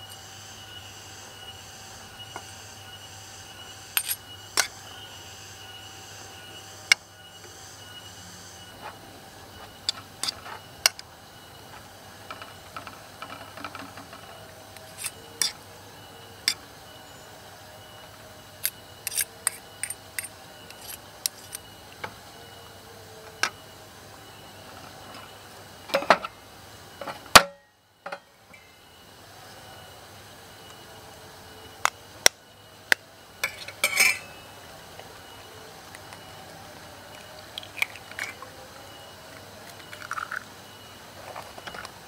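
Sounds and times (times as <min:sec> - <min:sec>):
metal utensils clinking: 0:33.4 - 0:34.4.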